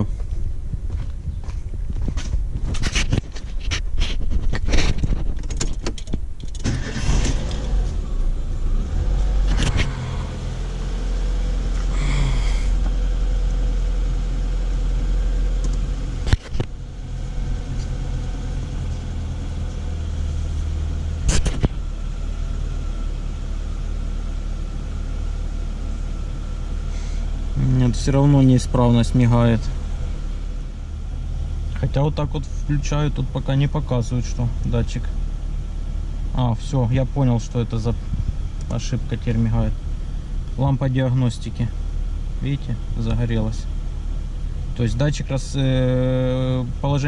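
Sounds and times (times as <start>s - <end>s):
clicks and rattles: 2.1s - 6.6s
car engine idling: 5.4s - 47.0s.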